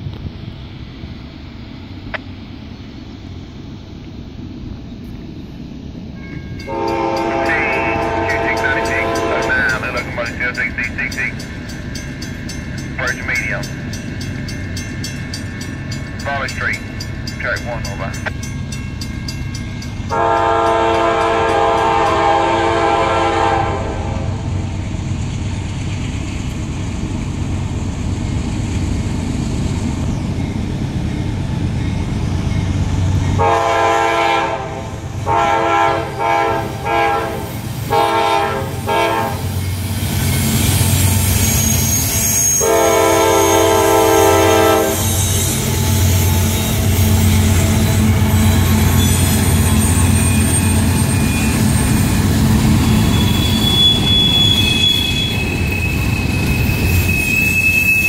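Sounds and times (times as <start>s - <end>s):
train cars hissing and clattering: 0.0s - 58.0s
locomotive horn blasts: 6.6s - 10.0s, 20.1s - 24.3s, 33.4s - 39.5s, 42.6s - 45.2s
wheel squeal: 40.2s - 43.7s, 44.9s - 58.0s.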